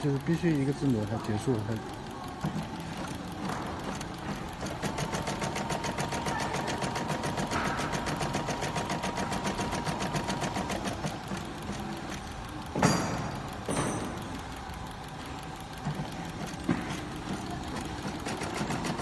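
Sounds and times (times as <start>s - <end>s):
sewing machine stitching: 0.0s - 13.6s, 14.6s - 19.0s
thin steady whine: 0.0s - 19.0s.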